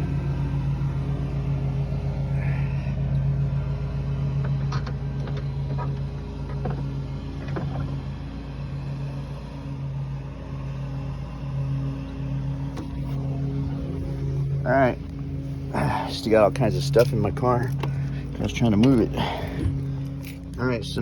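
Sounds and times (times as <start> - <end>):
car engine idling: 0.0 - 21.0
light clicks and knocks: 4.4 - 8.0.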